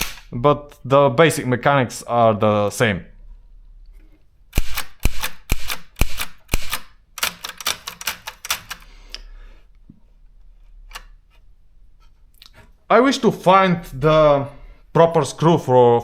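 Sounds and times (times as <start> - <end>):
typewriter key strikes: 4.7 - 8.8.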